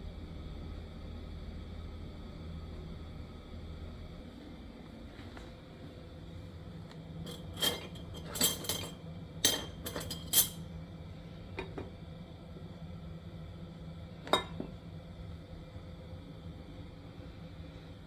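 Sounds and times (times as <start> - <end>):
steady low hum: 0.0 - 18.0
cutlery and dishes clinking: 7.3 - 10.6.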